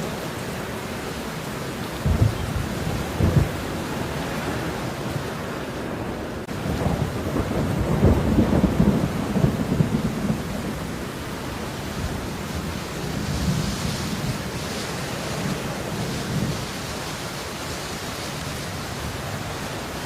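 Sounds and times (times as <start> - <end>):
steady rain: 0.0 - 20.0
low rumble of thunder: 1.9 - 4.8, 6.5 - 16.8.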